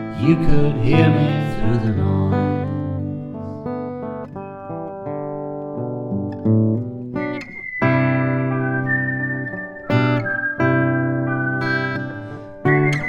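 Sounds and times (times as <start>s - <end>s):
strummed guitar chord: 0.0s - 7.2s
acoustic guitar picking: 0.0s - 13.0s.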